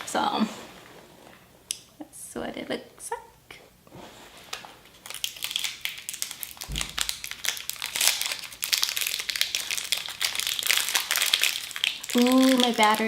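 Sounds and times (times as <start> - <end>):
plastic wrapper crinkling: 4.5 - 13.0.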